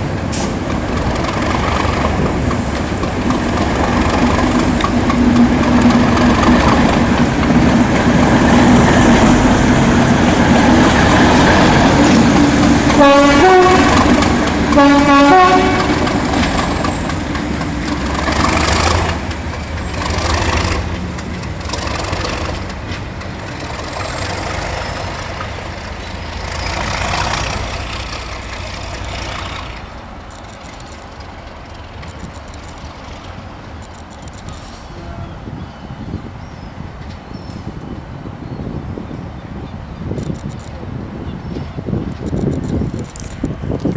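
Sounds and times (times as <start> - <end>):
diesel train engine: 0.0 - 43.9
two-tone train horn blasts: 12.9 - 16.2, 34.8 - 35.5.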